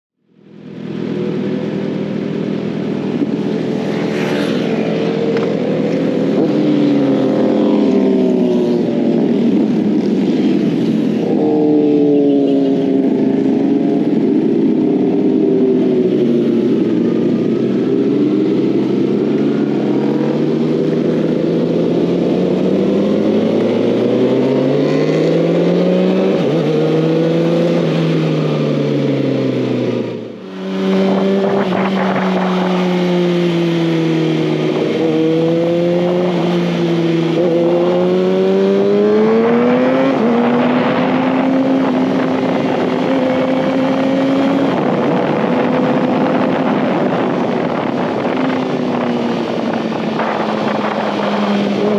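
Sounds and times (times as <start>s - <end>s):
motorcycle engine shifting gears: 0.8s - 51.9s.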